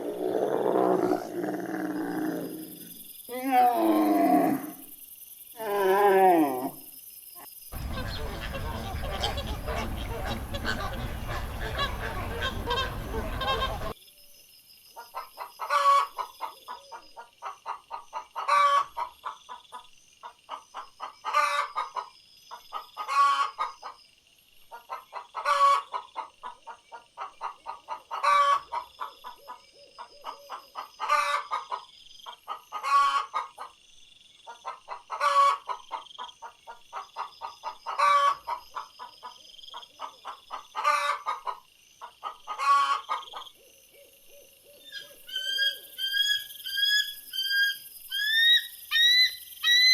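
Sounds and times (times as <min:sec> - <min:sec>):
hen cackling and squawking: 0:07.8 - 0:14.0, 0:17.7 - 0:19.1, 0:21.0 - 0:22.1, 0:23.0 - 0:23.8, 0:24.8 - 0:26.3, 0:27.2 - 0:29.5, 0:30.2 - 0:31.8, 0:32.5 - 0:33.7, 0:34.6 - 0:38.9, 0:40.0 - 0:43.4, 0:44.8 - 0:49.9.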